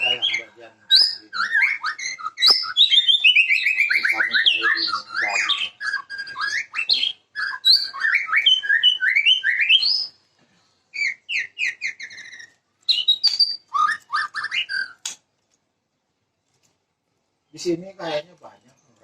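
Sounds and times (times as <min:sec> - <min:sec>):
bird singing sliding whistles: 0:00.9 - 0:10.2, 0:11.0 - 0:15.2.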